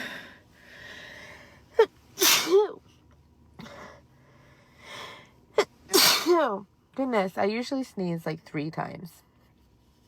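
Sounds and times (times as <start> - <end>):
woman sneezing: 1.8 - 2.8, 5.6 - 6.6.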